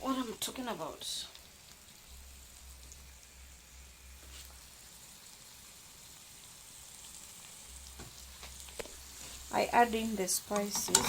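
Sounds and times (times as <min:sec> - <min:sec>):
vegetables sizzling in oil: 0:00.0 - 0:11.0.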